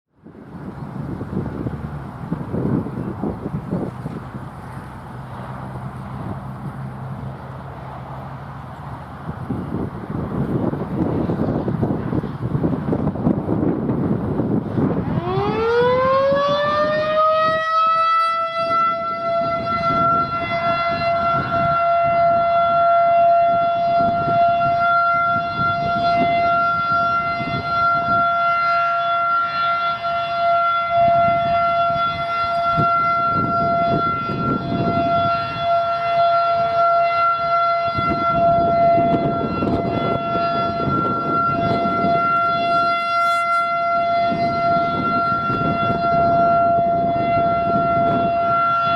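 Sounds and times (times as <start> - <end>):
rotating siren winding up: 15.0 - 48.9.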